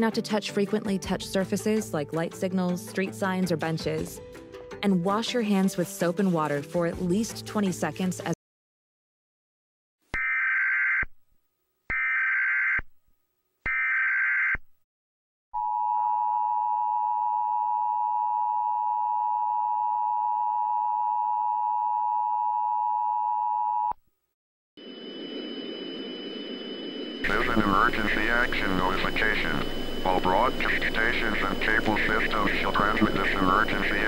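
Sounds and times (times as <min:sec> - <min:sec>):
steady two-tone alert signal: 0:24.8 - 0:34.0.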